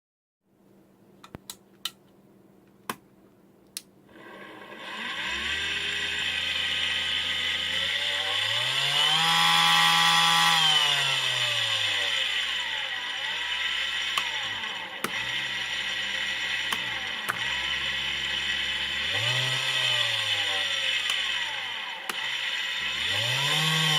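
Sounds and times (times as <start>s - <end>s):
clicks: 1.2s - 3.0s
small electric motor whining: 4.1s - 23.9s.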